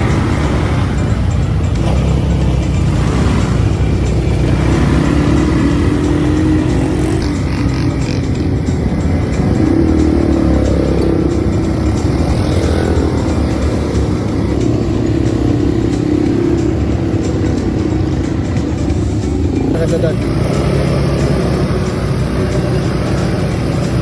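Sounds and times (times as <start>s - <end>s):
vehicle engine running: 0.0s - 24.0s.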